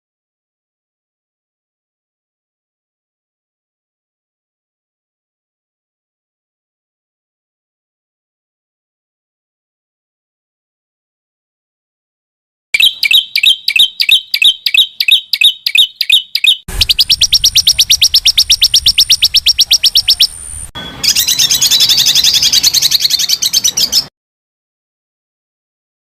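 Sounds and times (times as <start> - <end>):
songbird calling: 12.8 - 24.1.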